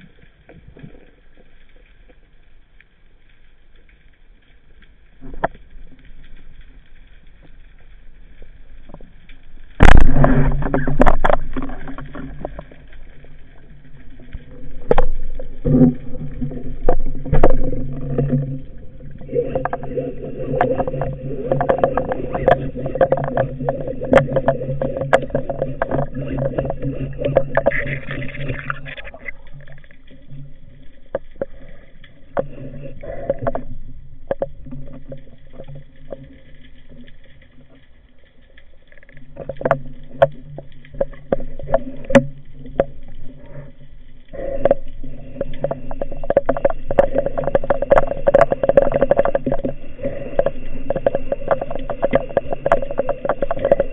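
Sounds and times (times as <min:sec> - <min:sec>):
sharp clicks and knocks: 0:09.7 - 0:37.3, 0:38.6 - 0:53.9
muffled underwater motor humming: 0:09.8 - 0:38.0, 0:39.0 - 0:53.9.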